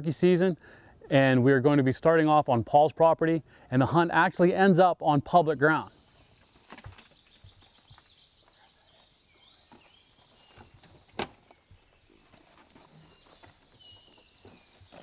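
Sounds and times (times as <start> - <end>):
songbirds singing: 4.5 - 15.0.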